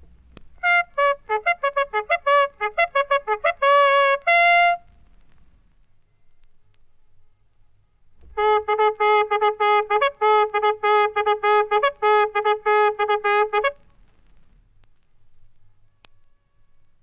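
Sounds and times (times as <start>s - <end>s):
bugle call on brass horn: 0.6s - 4.9s, 8.2s - 13.9s.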